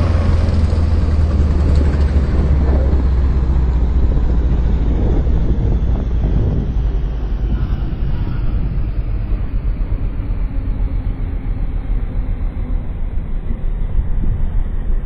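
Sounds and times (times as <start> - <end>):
low road rumble: 0.0 - 15.0.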